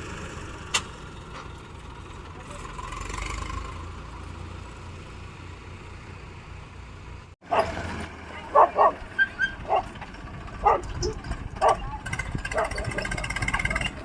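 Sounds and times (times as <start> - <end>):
diesel engine rumbling: 0.0 - 14.0
dog barking: 7.5 - 7.8, 8.5 - 10.0, 10.6 - 13.0.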